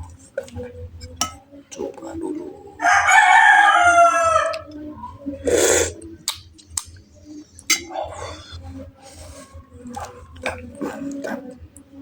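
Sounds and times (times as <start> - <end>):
rooster crowing: 2.8 - 4.7.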